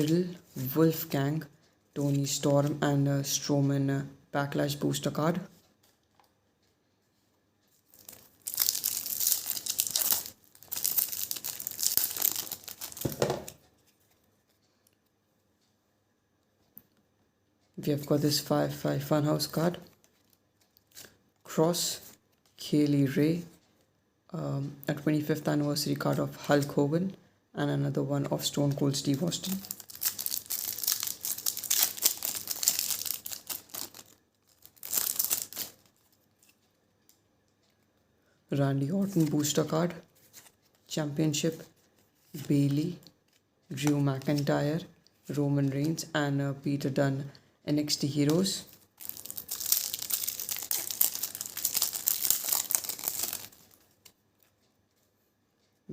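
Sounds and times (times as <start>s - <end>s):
plastic wrapper tearing and crinkling: 7.9s - 13.6s, 29.4s - 36.6s, 48.6s - 54.0s.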